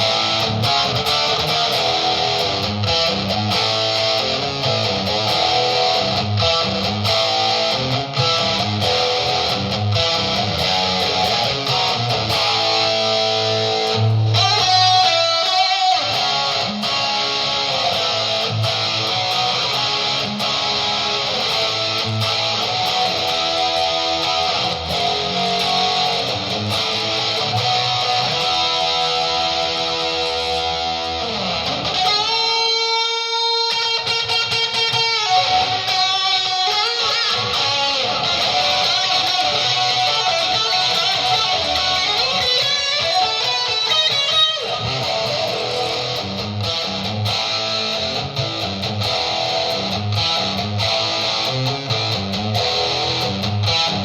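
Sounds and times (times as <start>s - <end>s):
electric guitar playing rock: 0.0s - 54.0s.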